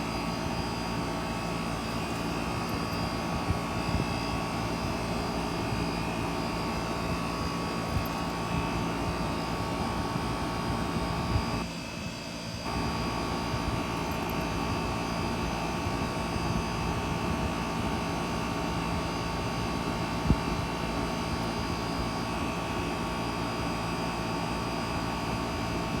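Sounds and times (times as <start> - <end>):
air conditioner humming: 0.0 - 23.7
whirring fan: 0.0 - 26.0.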